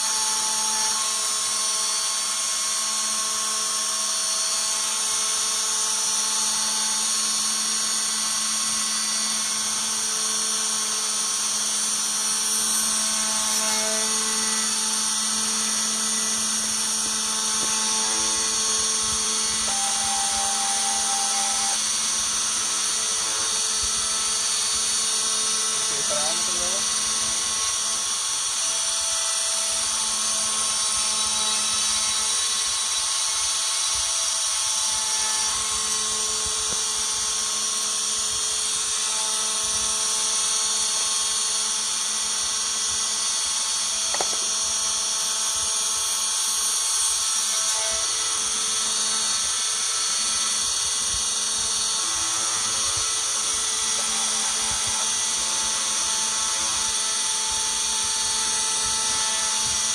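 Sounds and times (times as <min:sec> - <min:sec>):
spindle motor whining: 0:06.4 - 0:28.7.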